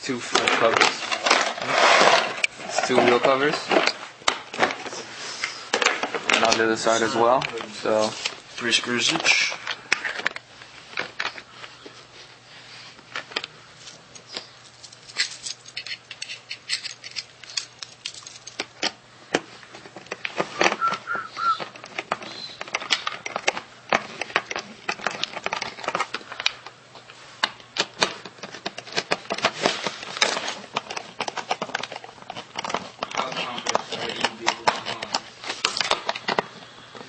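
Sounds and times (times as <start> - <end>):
plastic parts clicking and clattering: 0.3 - 4.9, 5.7 - 8.0, 14.1 - 20.9, 21.5 - 26.7, 27.4 - 36.5.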